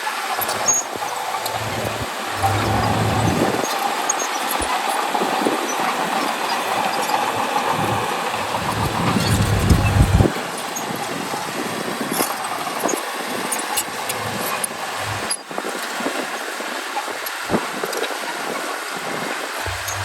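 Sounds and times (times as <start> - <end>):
bulldozer diesel engine: 0.3 - 3.7, 7.2 - 10.3, 14.2 - 15.3, 19.7 - 20.0.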